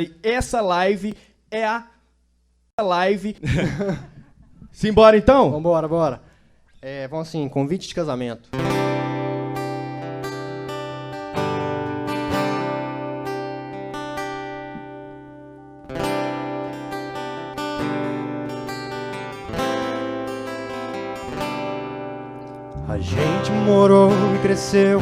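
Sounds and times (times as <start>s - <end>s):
acoustic guitar strumming chords: 8.5s - 25.0s.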